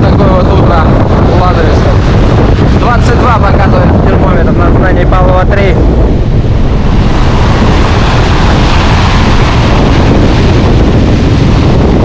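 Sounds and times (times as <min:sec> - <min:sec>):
gale wind on microphone: 0:00.0 - 0:12.0
storm surf roaring: 0:00.0 - 0:12.0.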